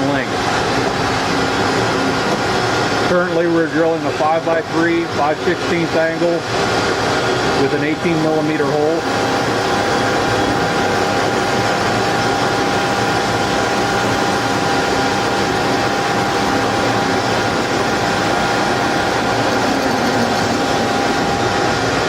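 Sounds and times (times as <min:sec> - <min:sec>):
drilling machine whine: 0:00.0 - 0:22.0.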